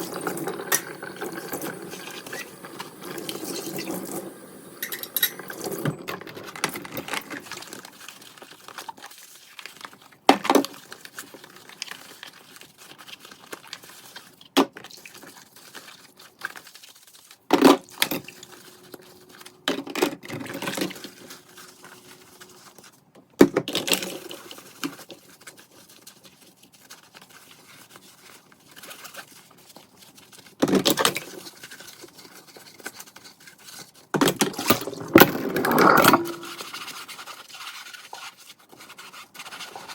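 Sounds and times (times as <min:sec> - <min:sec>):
kitchen items knocking and clattering: 0:00.0 - 0:07.7, 0:34.2 - 0:36.8
rustling and handling: 0:00.0 - 0:39.9.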